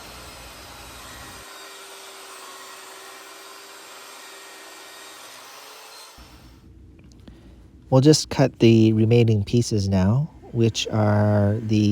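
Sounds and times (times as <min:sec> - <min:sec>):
electric motor running: 0:00.0 - 0:06.5.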